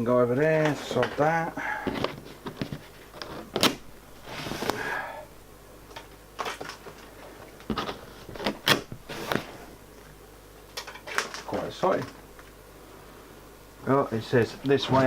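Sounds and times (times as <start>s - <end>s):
packaging rustling scrape: 1.9s - 4.9s, 7.7s - 9.8s.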